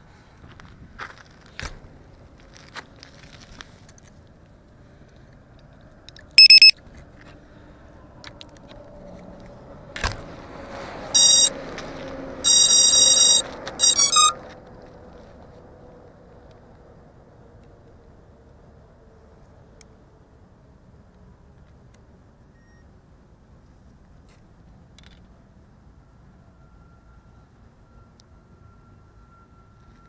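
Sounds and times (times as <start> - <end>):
electronic beeps: 6.4 - 6.7, 11.2 - 11.5, 12.5 - 14.4
held electronic tone: 6.4 - 6.7, 11.2 - 11.5, 12.4 - 14.4.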